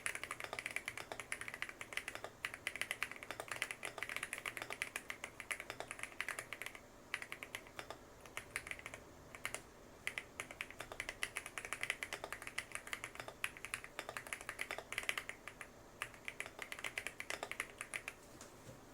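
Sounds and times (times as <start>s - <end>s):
fast typing on mechanical keyboard: 0.0s - 18.2s.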